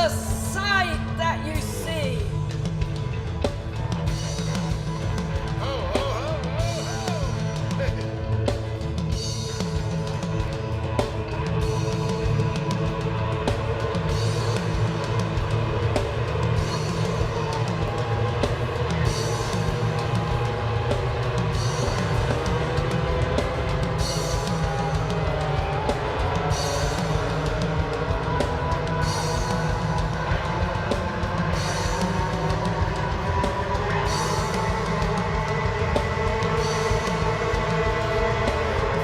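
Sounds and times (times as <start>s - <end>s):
band music: 0.0s - 39.0s
low drum and bass beat: 0.0s - 39.0s.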